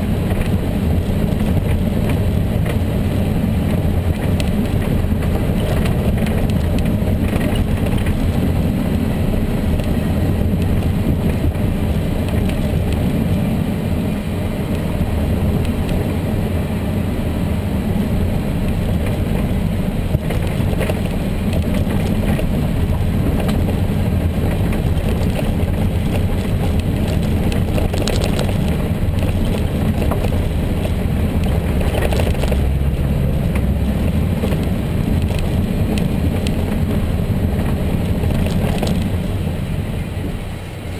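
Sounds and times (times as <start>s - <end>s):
car engine running: 0.0s - 40.9s.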